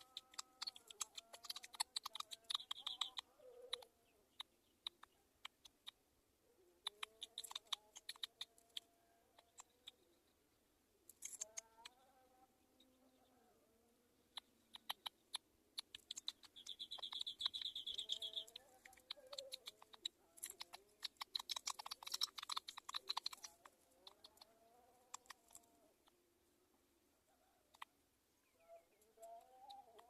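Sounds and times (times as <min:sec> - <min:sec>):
sharp clicks and ticks: 0:00.0 - 0:03.2, 0:06.9 - 0:09.8, 0:11.1 - 0:11.7, 0:15.8 - 0:24.5
bird high rapid trill: 0:00.0 - 0:03.8, 0:16.0 - 0:24.5
faint wavering bird calls: 0:00.0 - 0:30.0.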